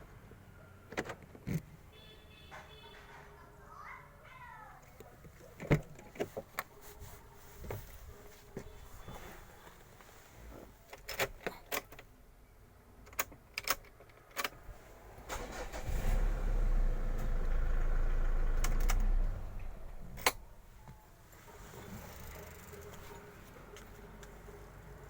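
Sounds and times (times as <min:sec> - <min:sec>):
car engine starting and running: 0:14.4 - 0:25.0.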